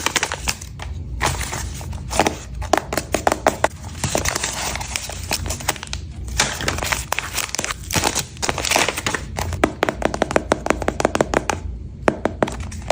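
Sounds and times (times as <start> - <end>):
plastic packaging crinkling: 0.0 - 2.2, 3.7 - 9.6.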